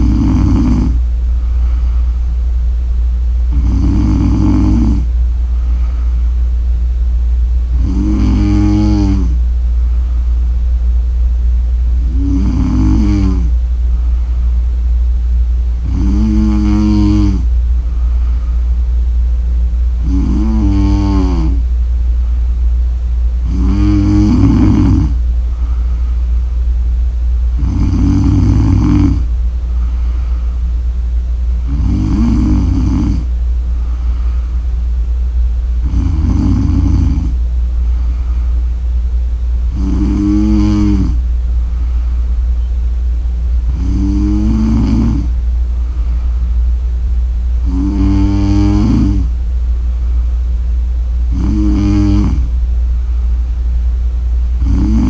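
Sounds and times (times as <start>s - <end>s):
woman snoring: 0.0s - 1.0s, 3.5s - 5.1s, 7.7s - 9.4s, 12.0s - 13.6s, 15.8s - 18.1s, 20.0s - 21.7s, 23.4s - 25.8s, 27.5s - 30.4s, 31.6s - 34.5s, 35.8s - 37.4s, 39.7s - 41.2s, 43.7s - 45.4s, 47.6s - 49.4s, 51.3s - 52.6s, 54.6s - 55.0s
steady low hum: 0.0s - 55.0s.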